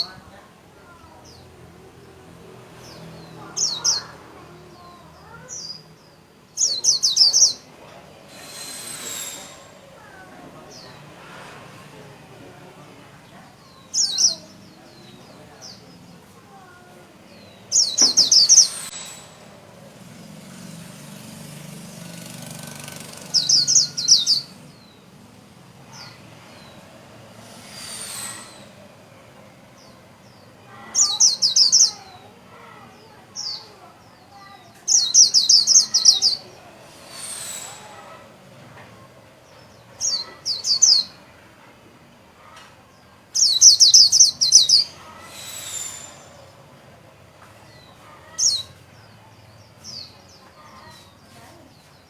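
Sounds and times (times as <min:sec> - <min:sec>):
bird warbling: 0:17.5 - 0:19.6, 0:22.4 - 0:24.9
thin high bird notes: 0:17.7 - 0:19.8.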